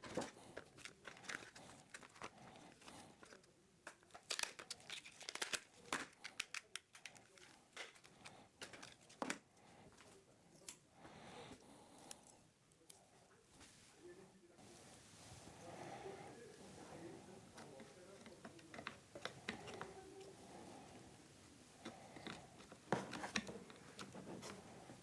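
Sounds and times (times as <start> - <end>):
thin plastic crinkling and tearing: 0.1 - 9.4.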